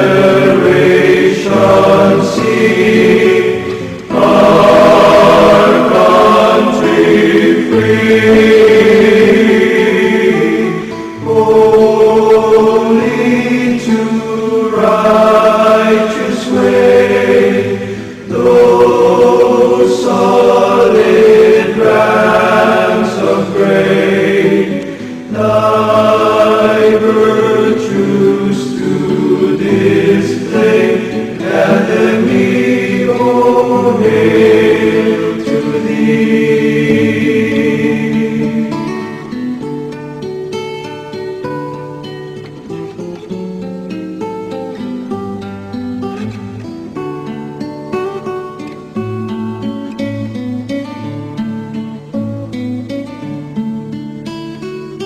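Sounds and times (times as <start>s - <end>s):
choir singing a hymn: 0.0s - 41.2s
singers breathing: 10.7s - 11.2s, 17.7s - 18.3s, 24.8s - 25.4s.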